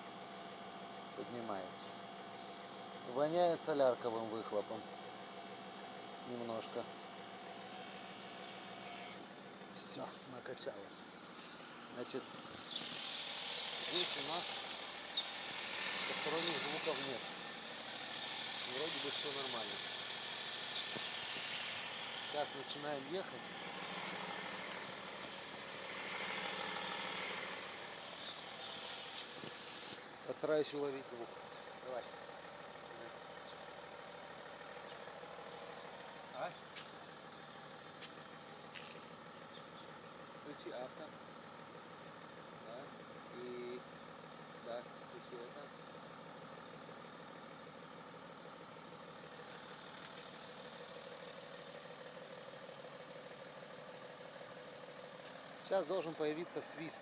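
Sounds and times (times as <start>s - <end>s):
diesel car engine idling: 0.0s - 57.0s.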